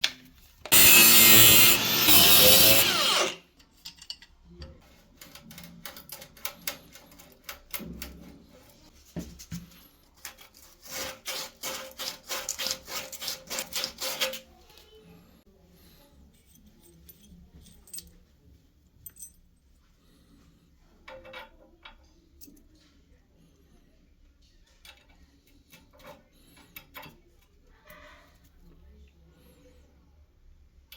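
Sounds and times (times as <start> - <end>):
power tool running: 0.7 - 3.4.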